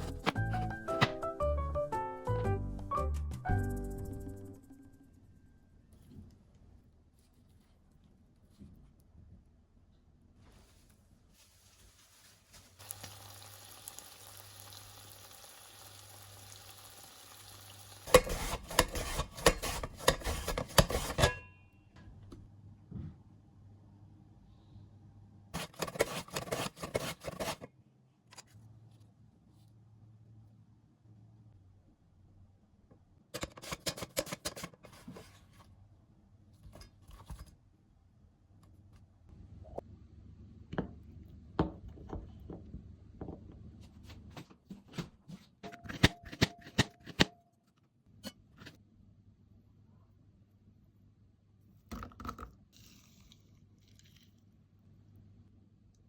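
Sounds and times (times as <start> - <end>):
soft rustling: 10.4 - 13.0
food sizzling in a pan: 12.7 - 18.6
spatula scraping a pan: 18.0 - 21.5, 25.6 - 27.7, 33.4 - 35.5.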